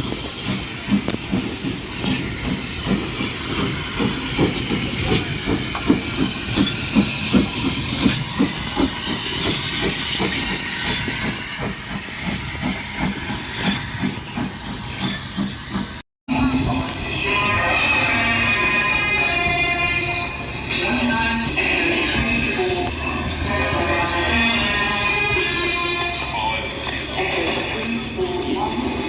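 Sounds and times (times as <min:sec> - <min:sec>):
steam hissing: 0:00.0 - 0:16.0
steam train knocking: 0:00.0 - 0:16.0.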